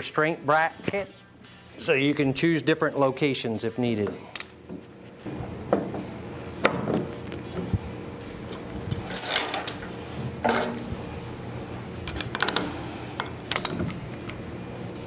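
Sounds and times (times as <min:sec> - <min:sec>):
steel parts clanking: 0:08.5 - 0:10.9.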